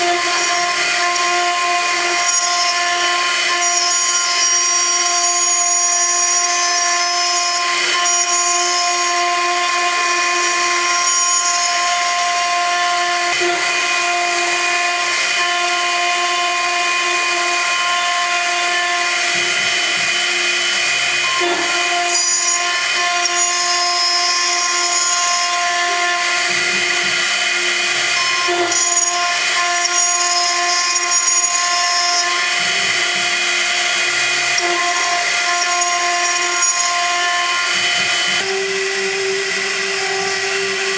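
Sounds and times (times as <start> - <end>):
metal cutting hiss: 0.0 - 40.9
milling spindle whine: 0.0 - 40.9.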